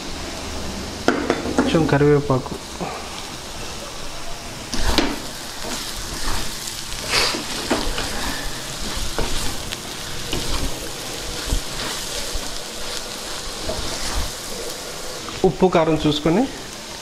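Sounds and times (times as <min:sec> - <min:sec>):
food sizzling in oil: 0:00.0 - 0:17.0
spatula scraping pan: 0:04.7 - 0:15.4.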